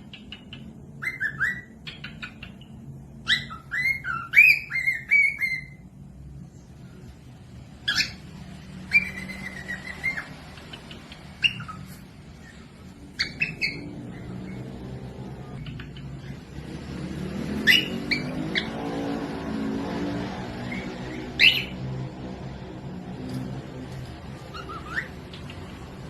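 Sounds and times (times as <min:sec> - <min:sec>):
cockatiel whistling and chirping: 0:00.0 - 0:05.8, 0:07.8 - 0:14.8, 0:15.6 - 0:16.4, 0:17.6 - 0:18.8, 0:20.7 - 0:21.8, 0:24.4 - 0:25.7.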